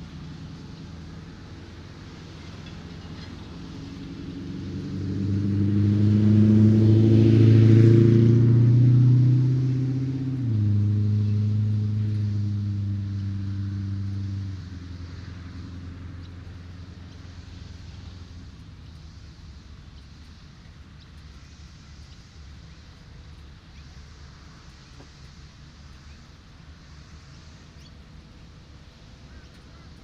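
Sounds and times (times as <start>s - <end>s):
vehicle engine passing by: 0.0s - 30.0s
tyre hiss: 14.0s - 30.0s.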